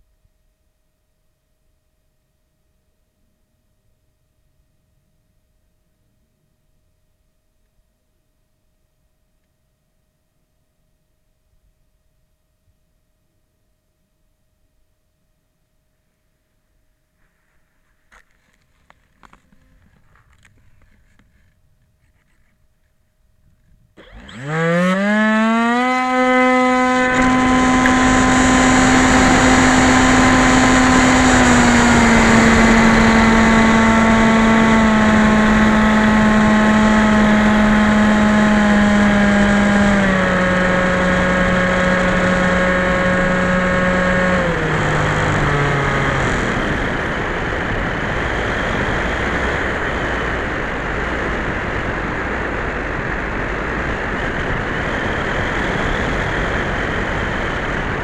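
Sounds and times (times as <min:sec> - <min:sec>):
electric motor and propeller whine: 0:23.6 - 0:58.0
steady rushing noise: 0:40.0 - 0:58.0.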